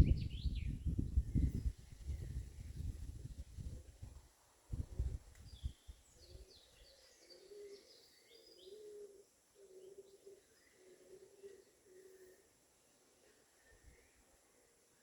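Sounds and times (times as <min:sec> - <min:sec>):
birds chirping and twittering: 0:00.0 - 0:03.7, 0:05.0 - 0:14.8
wind gust on microphone: 0:00.0 - 0:05.8.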